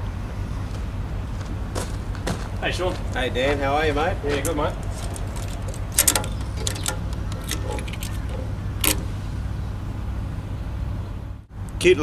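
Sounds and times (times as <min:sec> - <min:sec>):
low engine rumble: 0:00.0 - 0:12.0
sharp clicks: 0:04.4 - 0:09.1
metallic jingling: 0:04.4 - 0:09.6.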